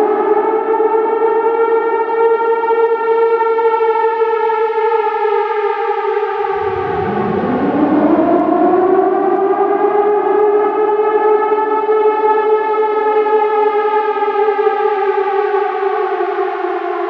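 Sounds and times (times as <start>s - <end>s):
air raid siren: 6.4s - 14.3s.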